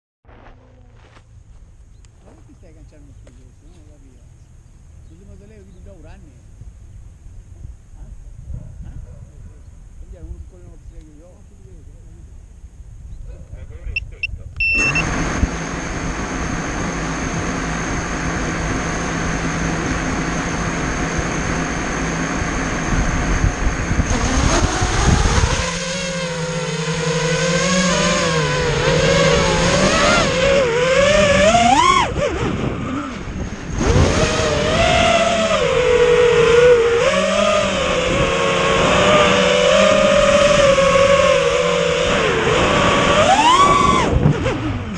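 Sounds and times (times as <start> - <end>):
quadcopter motors buzzing: 13.5 - 44.9.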